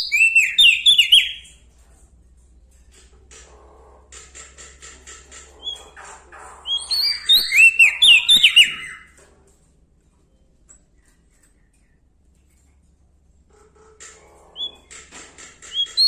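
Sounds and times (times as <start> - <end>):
songbird chips and whistles: 0.0 - 1.6, 6.6 - 9.2, 15.7 - 16.0.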